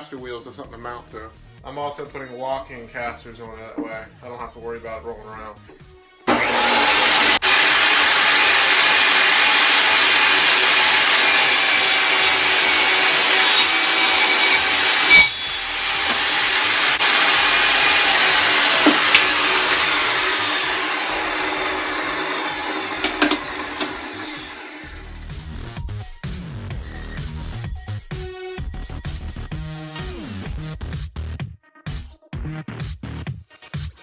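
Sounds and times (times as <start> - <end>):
power saw cutting wood: 6.3 - 25.5.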